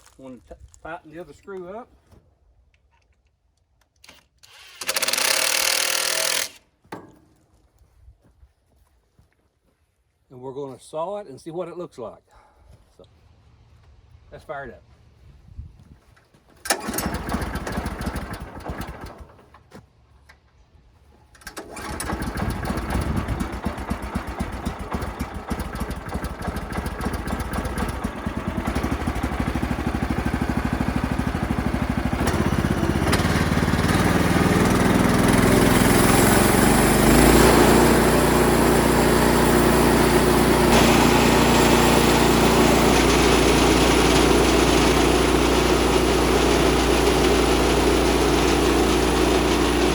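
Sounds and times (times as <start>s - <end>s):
small gasoline engine starting: 4.0s - 6.6s, 16.6s - 19.7s, 21.3s - 49.9s.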